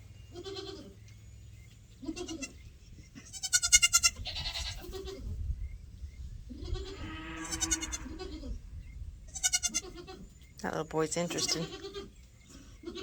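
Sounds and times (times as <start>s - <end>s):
goats bleating: 0.3s - 0.9s, 2.0s - 2.6s, 3.2s - 5.2s, 6.5s - 8.6s, 9.3s - 10.2s, 11.3s - 12.1s.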